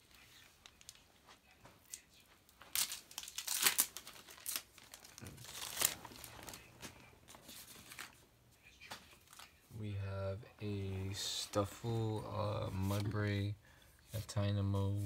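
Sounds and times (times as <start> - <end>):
foil wrapper crinkling and tearing: 2.6 - 6.7.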